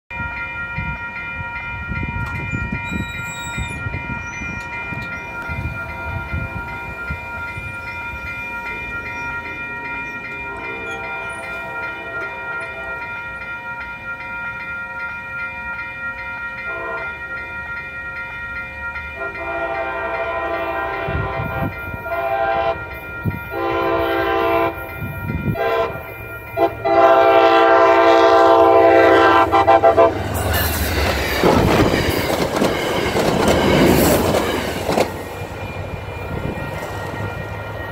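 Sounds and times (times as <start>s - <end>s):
locomotive bell ringing: 0.1s - 37.9s
locomotive air horn blasts: 10.4s - 13.1s, 16.7s - 17.2s, 19.2s - 22.8s, 23.5s - 30.6s.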